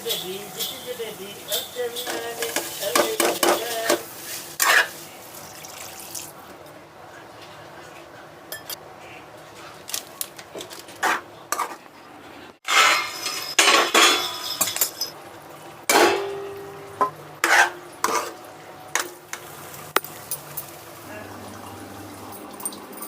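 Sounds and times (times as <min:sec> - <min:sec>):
metal utensils clinking on pot: 0:00.0 - 0:04.9, 0:08.5 - 0:08.8, 0:12.6 - 0:15.2.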